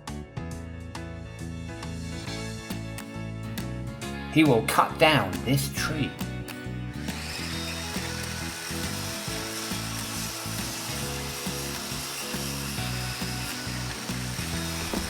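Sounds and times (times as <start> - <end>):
motor saw buzzing: 6.5 - 15.0.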